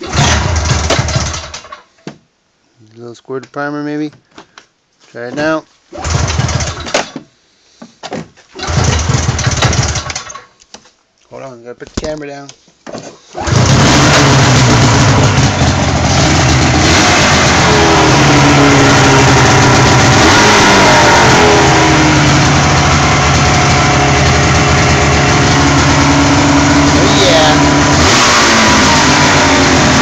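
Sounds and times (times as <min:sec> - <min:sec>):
snowmobile engine running: 0:13.5 - 0:30.0.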